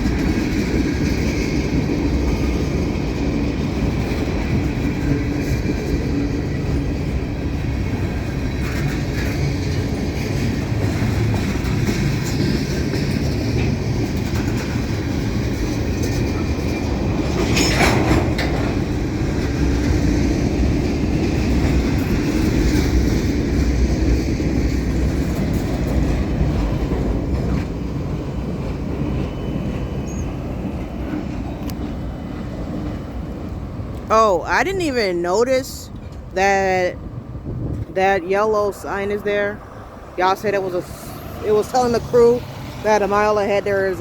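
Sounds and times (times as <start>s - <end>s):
freight cars rumbling and clacking: 0.0s - 44.0s.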